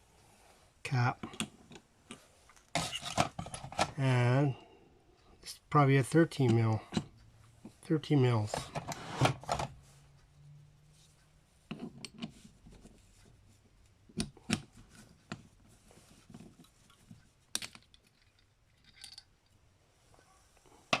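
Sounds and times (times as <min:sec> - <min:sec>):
small metal parts clicking: 0:17.5 - 0:19.6.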